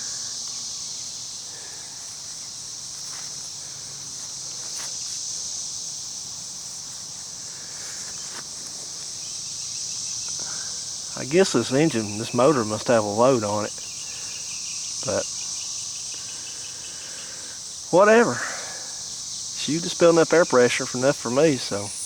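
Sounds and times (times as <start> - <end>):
high-pitched insect chorus: 0.0 - 22.0.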